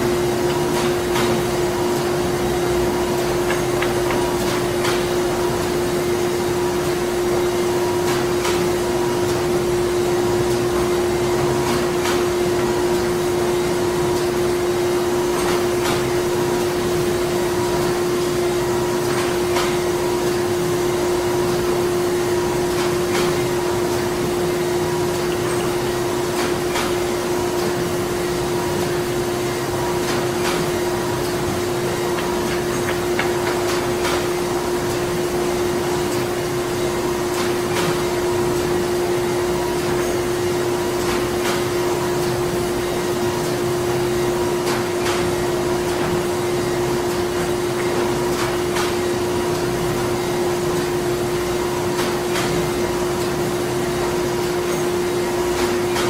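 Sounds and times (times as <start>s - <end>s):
machinery clicks and knocks: 0.0s - 6.0s, 30.0s - 35.0s
machinery humming: 0.0s - 51.6s.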